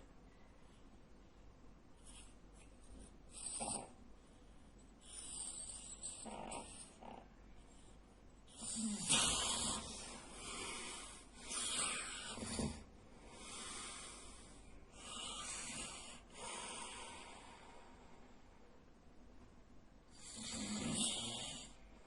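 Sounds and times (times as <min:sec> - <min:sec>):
man snoring loudly: 0:20.2 - 0:21.7.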